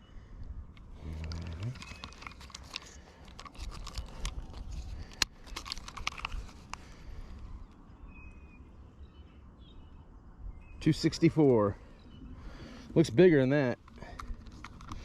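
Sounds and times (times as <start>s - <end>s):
handling clicks and rattles: 0.8s - 7.0s, 13.6s - 15.0s.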